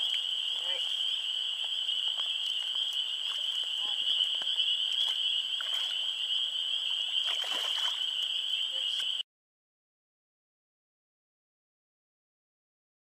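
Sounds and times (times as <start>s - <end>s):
frog chorus calling: 0.0s - 9.2s.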